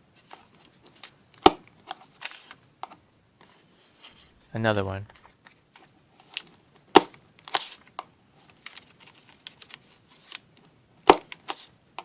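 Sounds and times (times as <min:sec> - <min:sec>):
paper rustling: 0:01.8 - 0:02.6, 0:03.4 - 0:06.6, 0:07.4 - 0:10.5, 0:11.3 - 0:11.7
toy paper punch snapping: 0:11.0 - 0:11.6.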